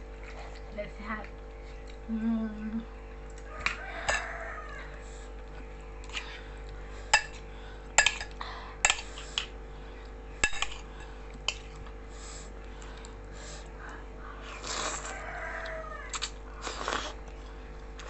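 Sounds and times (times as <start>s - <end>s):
utensils clinking against bowl: 3.7s - 4.4s, 7.1s - 7.4s, 8.0s - 9.5s, 10.4s - 11.8s.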